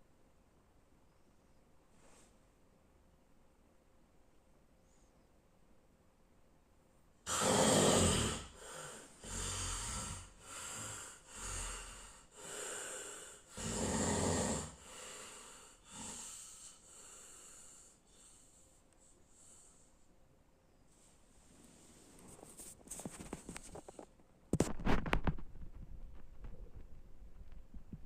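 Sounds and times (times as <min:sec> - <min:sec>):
snoring rasping breaths: 0:07.3 - 0:18.6.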